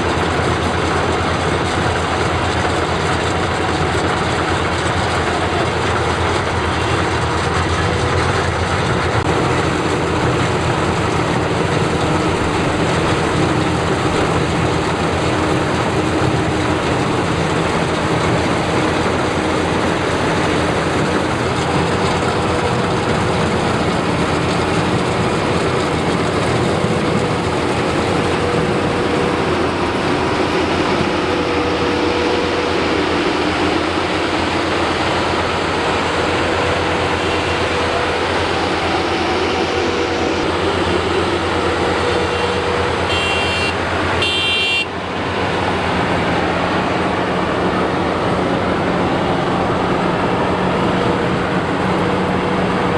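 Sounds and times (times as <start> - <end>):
combine harvester running: 0.0 - 52.9.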